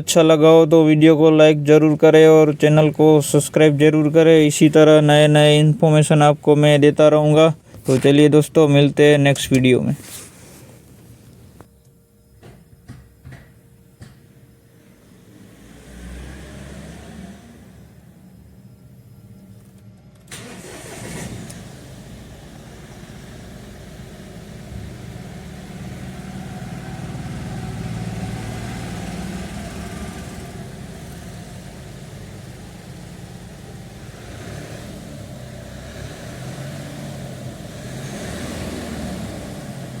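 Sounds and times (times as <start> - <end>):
diesel engine cranking and idling: 0.0 - 40.0.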